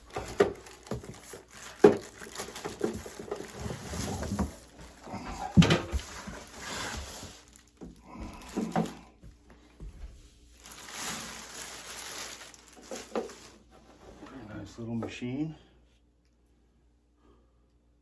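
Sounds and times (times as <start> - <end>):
plastic wrapping rustling: 0.0 - 9.0, 9.9 - 14.4.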